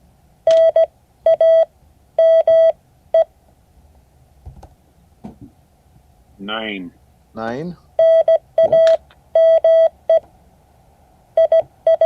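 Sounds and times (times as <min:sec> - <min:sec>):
morse code beeps: 0:00.5 - 0:03.3, 0:08.0 - 0:10.2, 0:11.4 - 0:12.0.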